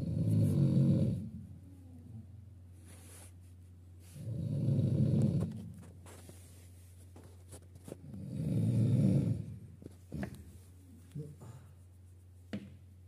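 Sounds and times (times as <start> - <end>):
person snoring loudly: 0.0 - 1.3, 4.2 - 5.5, 8.2 - 9.6
steady low hum: 0.0 - 13.0.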